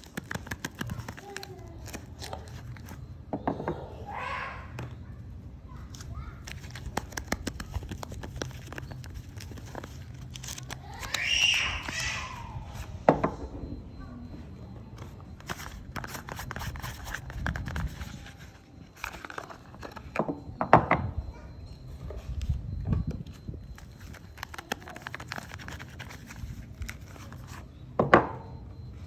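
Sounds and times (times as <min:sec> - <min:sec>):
packaging crinkling and tearing: 0:00.0 - 0:03.0, 0:06.4 - 0:12.4, 0:15.4 - 0:20.2, 0:23.7 - 0:27.6.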